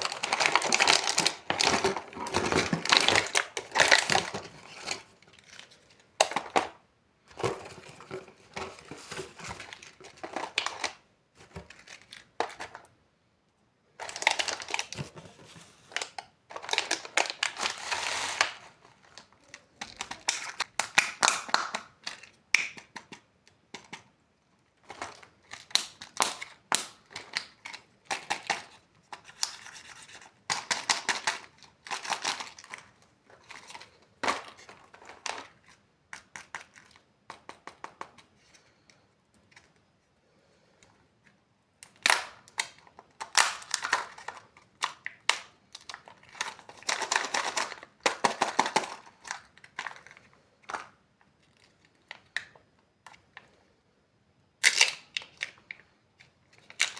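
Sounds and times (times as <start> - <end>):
plastic packaging crinkling: 0.0 - 12.8, 14.0 - 22.3, 24.9 - 35.6.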